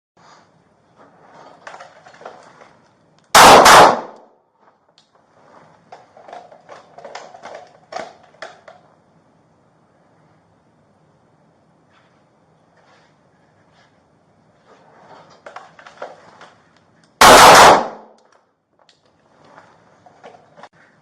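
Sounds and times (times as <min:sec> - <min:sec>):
gunshots: 0:03.3 - 0:04.3, 0:17.2 - 0:18.2.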